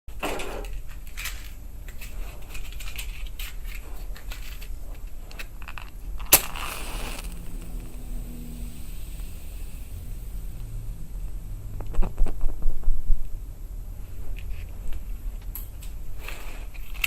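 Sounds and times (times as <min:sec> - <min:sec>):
matchbox rattling: 0:01.1 - 0:07.8
match struck and flaring: 0:06.2 - 0:10.4.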